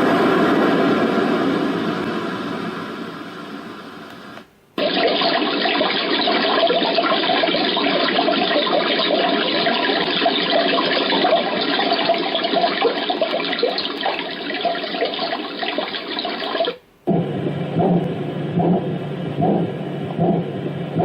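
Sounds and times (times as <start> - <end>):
white noise machine rushing: 0.0 - 4.9, 17.1 - 21.0.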